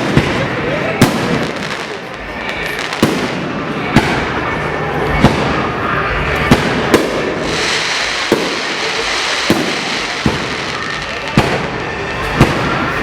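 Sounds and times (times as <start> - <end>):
fireworks bangs: 0.0 - 13.0
fireworks crackle and hiss: 0.0 - 13.0.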